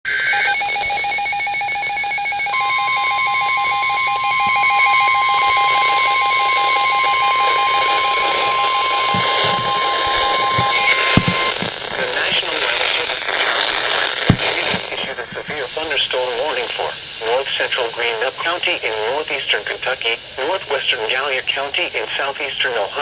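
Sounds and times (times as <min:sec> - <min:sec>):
pulsing electronic beeps: 0:00.1 - 0:12.8.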